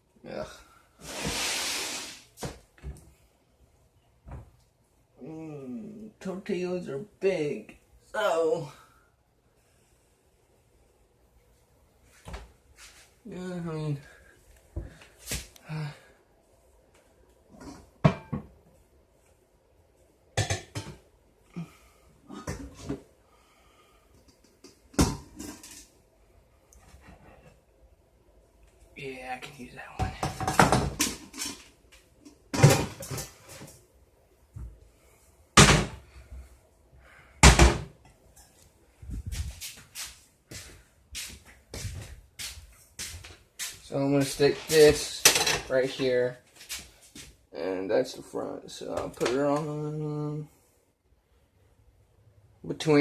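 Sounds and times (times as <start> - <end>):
pots and pans clanking: 17.7 - 18.5
loud kitchen bangs: 35.6 - 36.0, 37.4 - 37.9.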